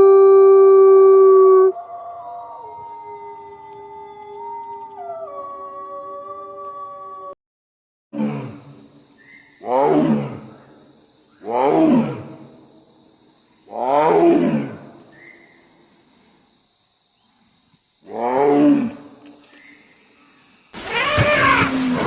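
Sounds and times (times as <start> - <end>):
large wild animal roaring: 8.2 - 8.8, 9.6 - 10.6, 13.8 - 15.0.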